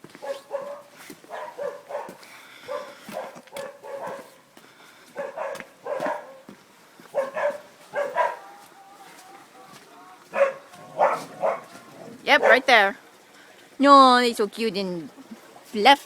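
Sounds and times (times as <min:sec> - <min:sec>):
dogs barking: 0:00.1 - 0:04.5, 0:05.1 - 0:12.9.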